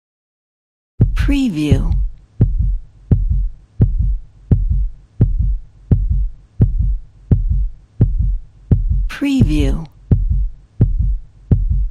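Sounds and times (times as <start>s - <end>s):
heartbeat: 1.0s - 11.9s.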